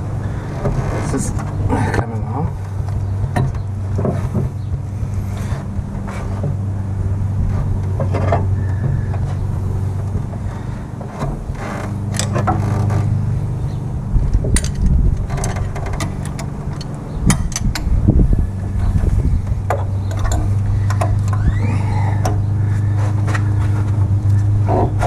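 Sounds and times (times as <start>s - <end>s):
low mechanical hum: 0.0s - 25.0s
metal tools clinking and clanking: 14.6s - 17.8s.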